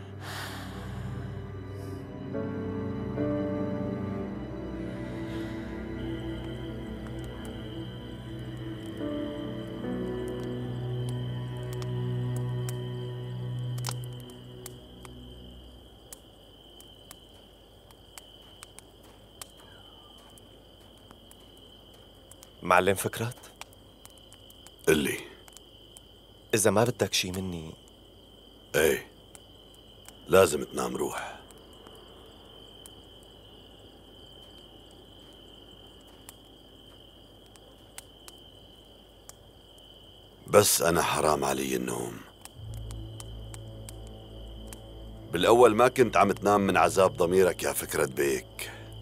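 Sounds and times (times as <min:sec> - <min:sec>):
background music: 0:00.0 - 0:15.9, 0:41.3 - 0:49.0
crickets chirping: 0:00.0 - 0:49.0
faint ticks: 0:06.0 - 0:46.5.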